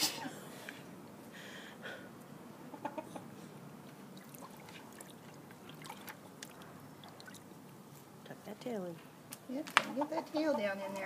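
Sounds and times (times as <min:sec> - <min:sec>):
hen clucking softly: 0:02.7 - 0:03.4
water splashing: 0:04.1 - 0:07.8.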